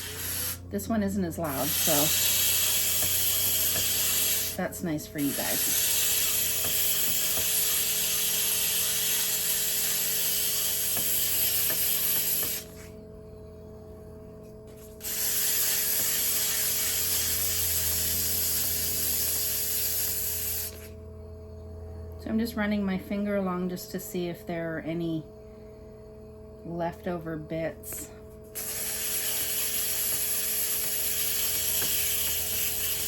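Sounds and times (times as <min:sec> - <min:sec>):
sanding pad wet hiss on pot: 0:00.0 - 0:12.9, 0:15.0 - 0:20.9, 0:28.6 - 0:33.0
pottery wheel motor hum: 0:00.0 - 0:33.0.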